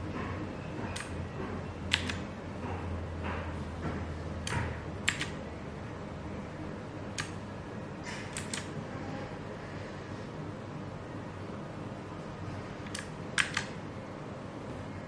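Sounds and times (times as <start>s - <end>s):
mechanical keyboard key clicks: 1.9s - 2.2s, 4.5s - 5.4s, 8.3s - 8.7s, 12.9s - 13.7s.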